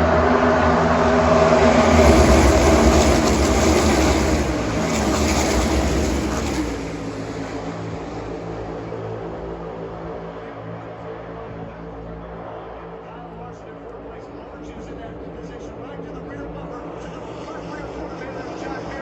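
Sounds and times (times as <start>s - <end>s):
race car engines passing: 0.0s - 11.6s.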